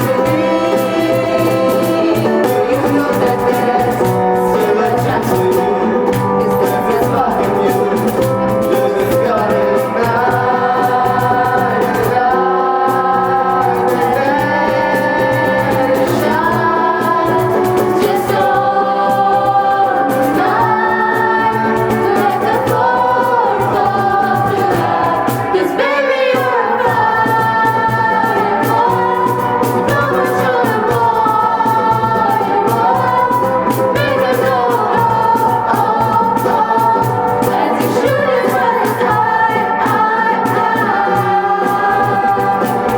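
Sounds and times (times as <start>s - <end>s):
choir singing: 0.0s - 42.9s
instrumental accompaniment: 0.0s - 42.9s.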